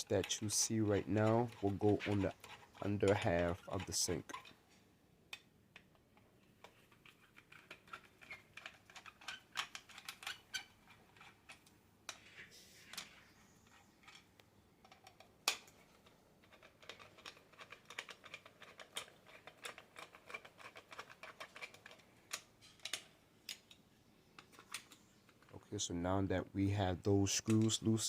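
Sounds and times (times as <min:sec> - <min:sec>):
screwdriver clicking on metal screws: 0:00.1 - 0:04.5, 0:16.4 - 0:23.8.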